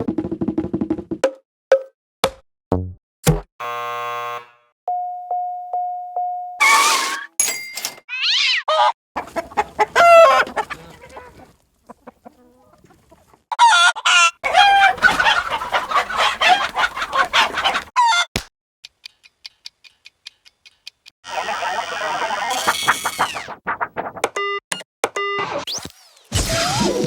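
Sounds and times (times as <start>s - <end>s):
cartoon chickens clucking: 8.1s - 18.3s, 19.0s - 23.6s.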